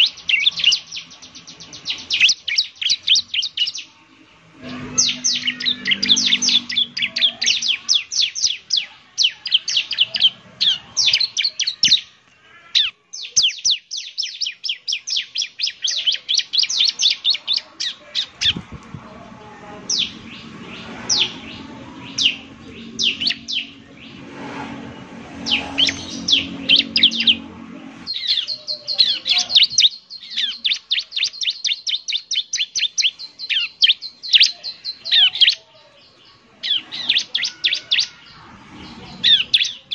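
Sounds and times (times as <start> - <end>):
bird chattering song: 0.0 - 4.0, 4.6 - 12.2, 12.8 - 18.9, 19.8 - 24.3, 25.4 - 39.9
low steady hum: 4.0 - 7.9.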